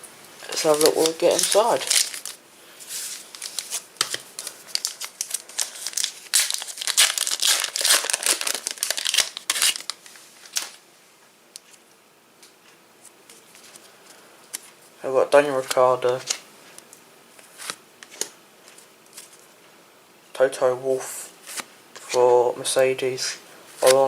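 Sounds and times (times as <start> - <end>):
foil wrappers torn and crinkled: 0.5 - 2.4, 3.0 - 10.8.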